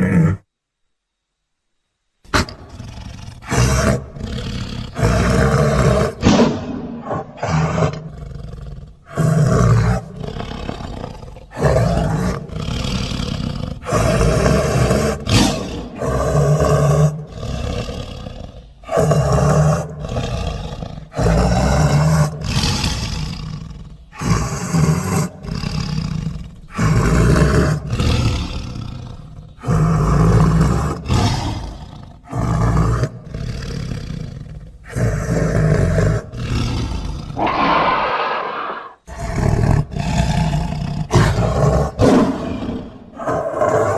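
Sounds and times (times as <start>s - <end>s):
big cat roars and snarls: 0.0s - 0.5s, 2.3s - 43.9s.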